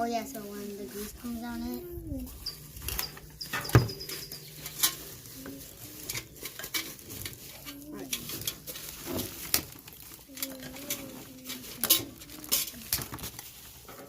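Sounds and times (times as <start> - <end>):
packaging being handled: 0.4 - 13.9
metal parts clinking and knocking: 2.4 - 5.2, 10.4 - 13.3.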